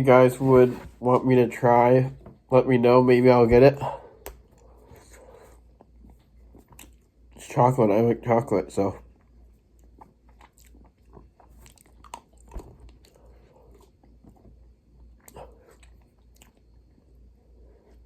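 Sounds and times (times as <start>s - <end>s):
person chewing crunchy nuts: 4.5s - 7.4s, 9.0s - 17.0s.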